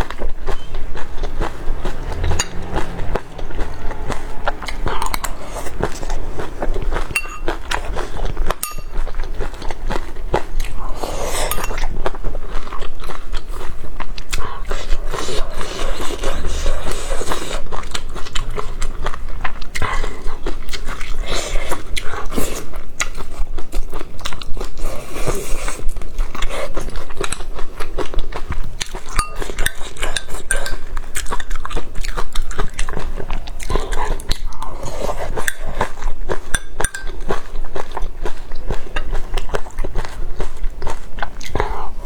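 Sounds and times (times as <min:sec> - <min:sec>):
chewing and biting: 0:00.0 - 0:42.0
cutlery clinking against a dish: 0:07.0 - 0:09.6, 0:11.2 - 0:12.1, 0:28.8 - 0:31.6, 0:34.8 - 0:37.6.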